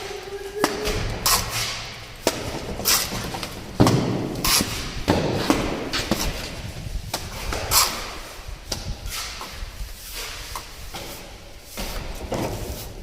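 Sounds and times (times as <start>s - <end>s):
construction knocks and thuds: 0.6s - 7.8s.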